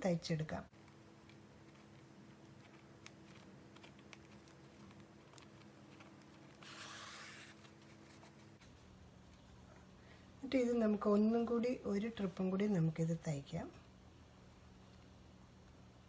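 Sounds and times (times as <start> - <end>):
steady low hum: 0.0 - 16.0
cloth and thread rustling: 0.8 - 9.8.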